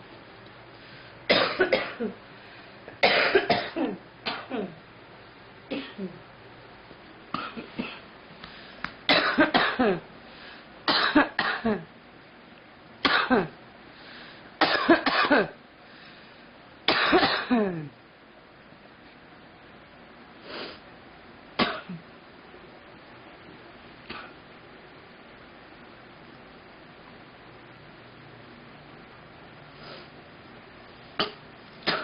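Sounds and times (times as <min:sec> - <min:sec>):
girl coughing: 0:01.3 - 0:02.2, 0:03.0 - 0:04.8, 0:05.7 - 0:06.2, 0:07.4 - 0:08.0, 0:09.1 - 0:10.0, 0:10.9 - 0:11.9, 0:13.1 - 0:13.5, 0:14.6 - 0:15.6, 0:16.9 - 0:17.9, 0:21.6 - 0:22.0, 0:31.2 - 0:32.0.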